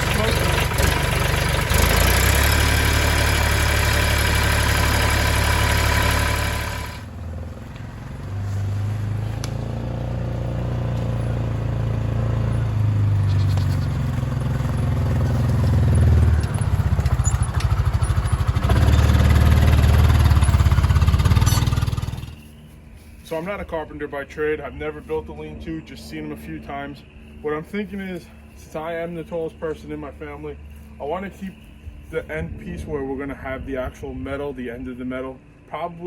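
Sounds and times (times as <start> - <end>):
tractor diesel engine running: 0.0 - 24.7.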